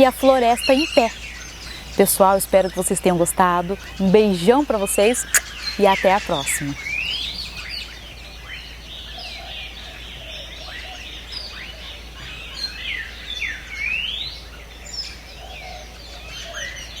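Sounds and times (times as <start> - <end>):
birds chirping and whistling: 0.3 - 7.7.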